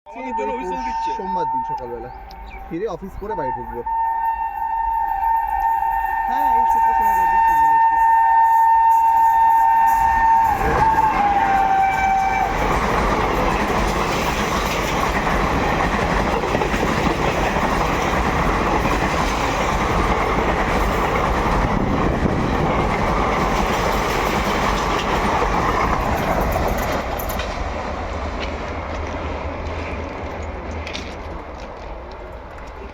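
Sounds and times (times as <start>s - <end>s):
locomotive horn: 0.1s - 14.2s
train coaches rumbling and clattering: 5.1s - 32.9s.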